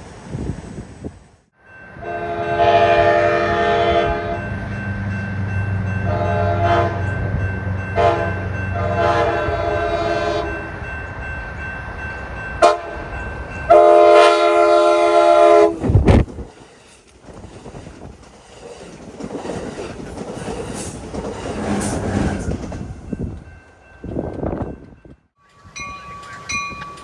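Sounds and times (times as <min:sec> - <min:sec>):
train low rumble: 0:00.0 - 0:27.0
locomotive air horn blasts: 0:02.0 - 0:04.6, 0:06.0 - 0:07.3, 0:08.0 - 0:10.8, 0:12.6 - 0:13.1, 0:13.7 - 0:16.0.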